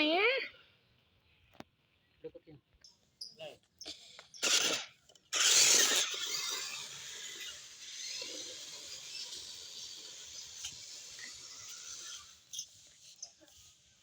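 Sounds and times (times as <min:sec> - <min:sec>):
toy truck electric motor whir: 0:03.8 - 0:14.0.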